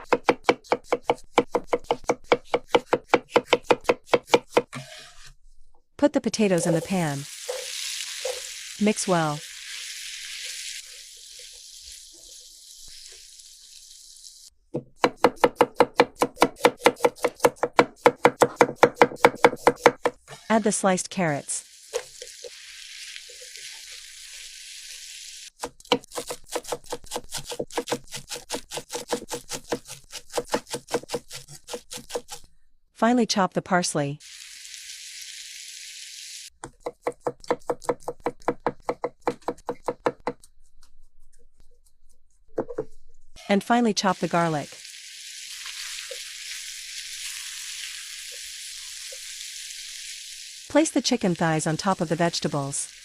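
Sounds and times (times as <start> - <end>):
knife chopping on cutting board: 0.0 - 4.9, 14.8 - 20.2, 25.6 - 32.4, 36.6 - 40.5
food sizzling in a pan: 6.6 - 14.5, 21.4 - 25.6, 34.2 - 36.5, 44.2 - 51.1, 51.9 - 53.0.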